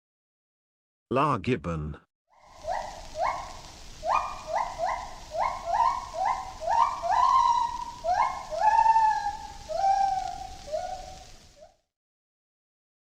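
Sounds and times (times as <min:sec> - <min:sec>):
gibbon singing: 0:02.4 - 0:11.3.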